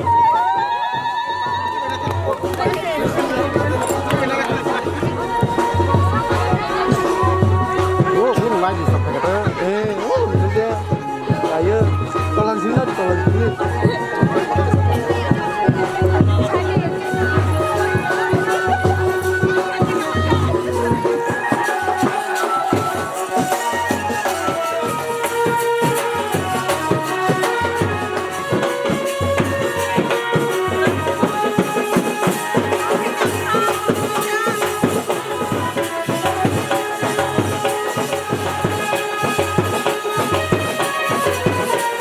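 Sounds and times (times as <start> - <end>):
busy percussion beat: 0.0 - 42.0
sustained melodic lines: 2.1 - 33.2.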